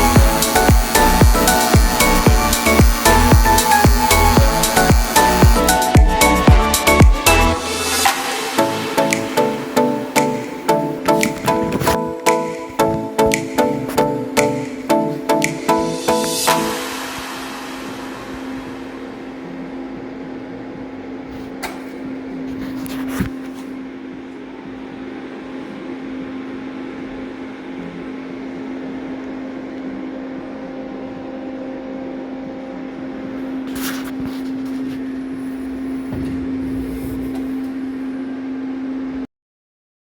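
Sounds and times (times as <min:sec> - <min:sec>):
rough noisy hiss: 0:00.0 - 0:11.9, 0:16.0 - 0:19.9
machine hum: 0:00.0 - 0:21.3, 0:23.7 - 0:39.2.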